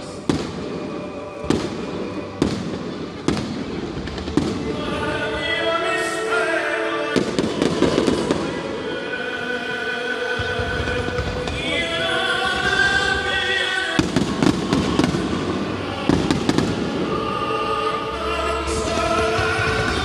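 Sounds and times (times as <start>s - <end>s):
crackling firework bangs: 0.0s - 4.9s, 14.0s - 17.1s
fireworks bangs: 0.0s - 5.6s, 7.2s - 8.8s, 10.4s - 18.0s
music: 0.0s - 20.0s.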